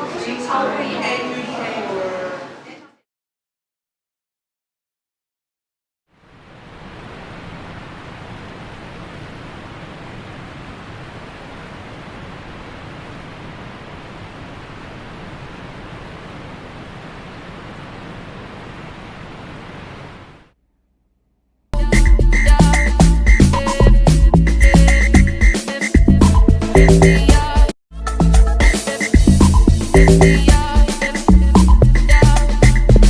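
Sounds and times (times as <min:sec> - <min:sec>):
steady rushing noise: 0:06.2 - 0:20.6.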